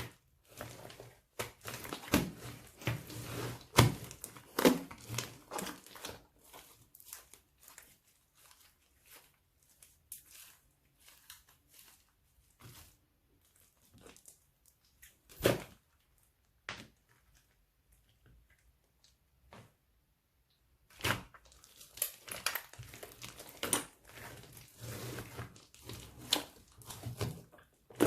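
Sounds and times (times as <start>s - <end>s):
slime squished with sticky crackles: 20.8s - 24.8s.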